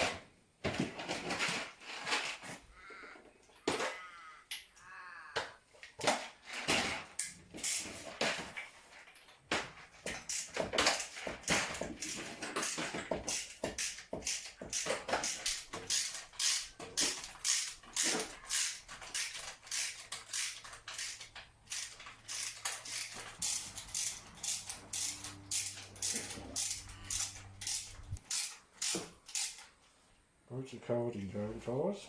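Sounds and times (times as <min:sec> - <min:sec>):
hand tools clicking: 0:10.0 - 0:29.8.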